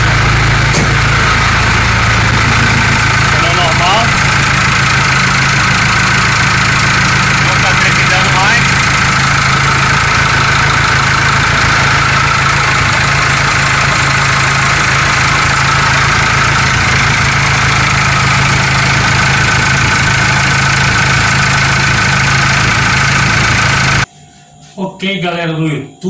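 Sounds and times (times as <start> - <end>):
diesel engine idling: 0.0 - 24.1.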